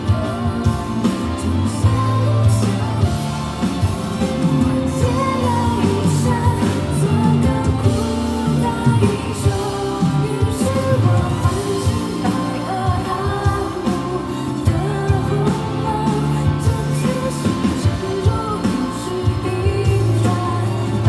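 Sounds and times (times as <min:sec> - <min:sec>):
band accompaniment: 0:00.0 - 0:21.0
woman singing pop song: 0:00.0 - 0:21.0.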